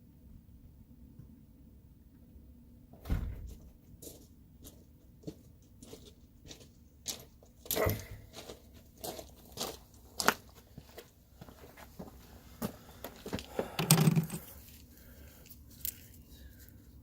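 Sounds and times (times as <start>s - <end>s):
handling clicks taps and scrapes: 13.3s - 16.8s.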